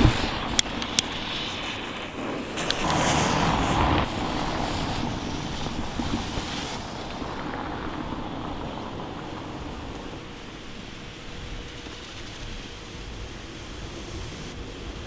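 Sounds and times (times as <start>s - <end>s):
firework crack: 0.0s - 15.0s
firework rushing hiss: 0.0s - 15.0s.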